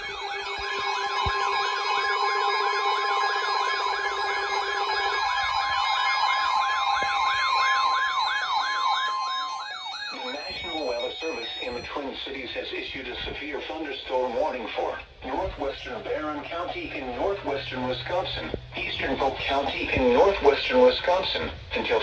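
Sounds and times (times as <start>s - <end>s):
electronic siren sweeping: 0.0s - 12.4s
steady warning alarm tone: 0.0s - 12.8s, 13.6s - 20.8s.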